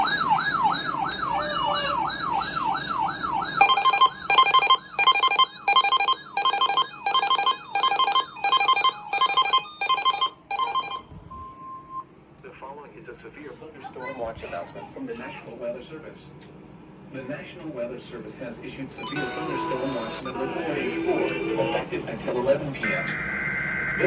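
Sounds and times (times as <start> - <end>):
steady alert tone: 0.0 - 11.0
wailing electronic alert tone: 0.0 - 11.1, 19.0 - 20.5
rapid two-tone beeps: 0.0 - 12.1, 19.0 - 19.2.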